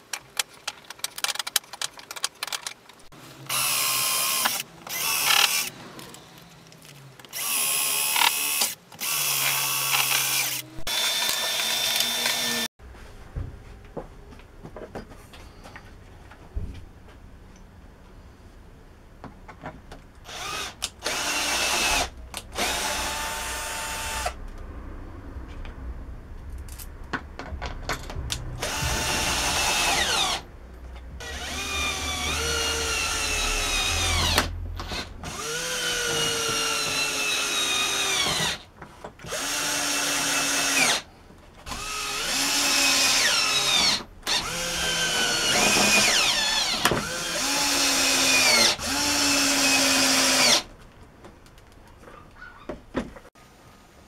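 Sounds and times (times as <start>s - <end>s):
electric drill whine: 3.5s - 5.7s, 7.4s - 12.7s, 20.3s - 24.4s, 28.6s - 30.4s, 31.2s - 38.6s, 41.7s - 50.6s.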